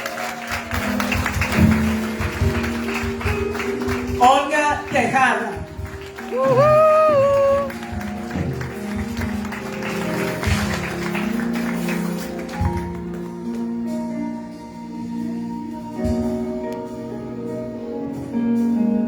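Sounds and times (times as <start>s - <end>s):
applause: 0.0s - 13.7s.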